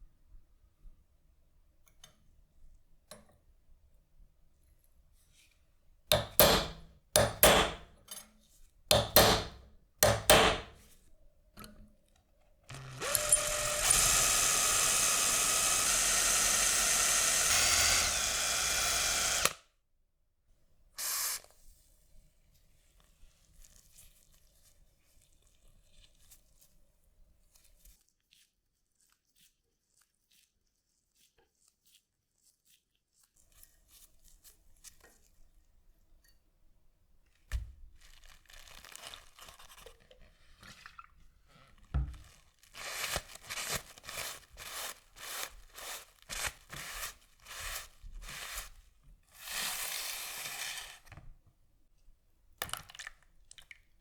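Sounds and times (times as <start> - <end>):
power tool motor: 12.7 - 19.6.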